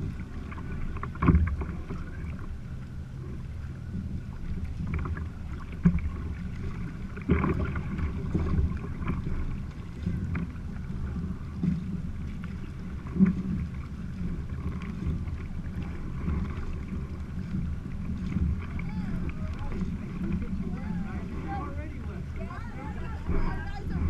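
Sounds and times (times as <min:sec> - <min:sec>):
water splashing around kayak: 0:00.0 - 0:24.0
wind rumble on microphone: 0:00.0 - 0:24.0.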